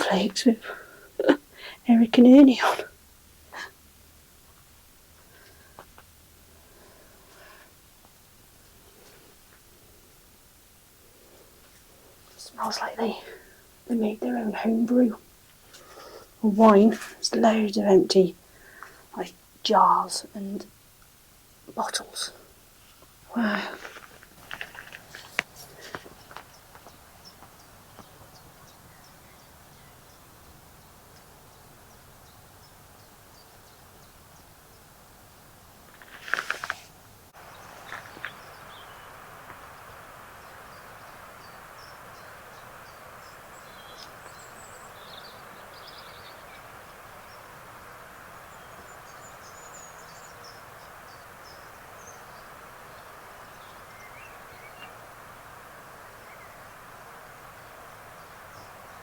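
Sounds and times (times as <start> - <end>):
outdoor background hiss: 0.0 - 59.0
birds chirping: 11.0 - 20.7, 23.3 - 59.0
loud rustle or clatter: 23.7 - 26.9, 35.9 - 37.0.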